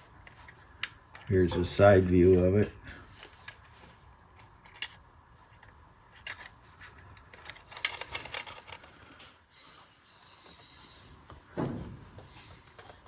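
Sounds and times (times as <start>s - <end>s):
toy train clicks and taps: 3.1s - 8.9s.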